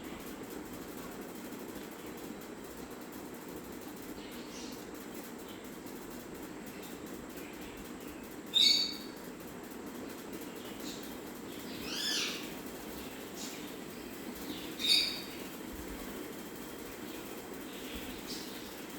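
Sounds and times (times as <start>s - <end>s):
parrot calling: 11.8s - 12.6s, 14.7s - 15.3s.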